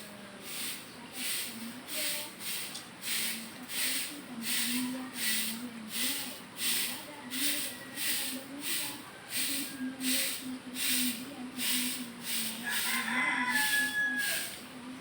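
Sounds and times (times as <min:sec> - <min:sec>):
broom sweeping: 0:00.0 - 0:14.7.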